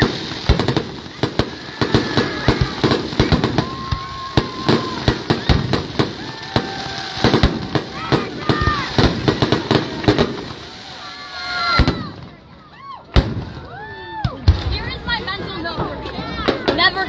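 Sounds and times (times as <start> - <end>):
fireworks whistling: 0.0 - 12.4
fireworks bangs and crackles: 0.0 - 17.0.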